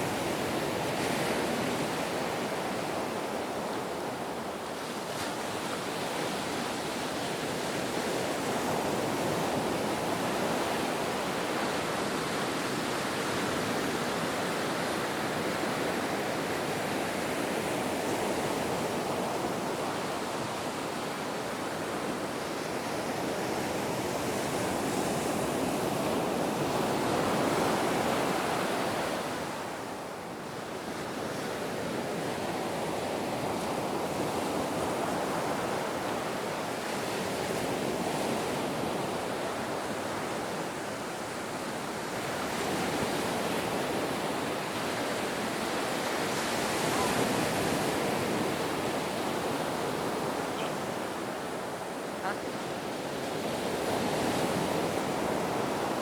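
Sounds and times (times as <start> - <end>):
ocean waves breaking: 37.4 - 56.0.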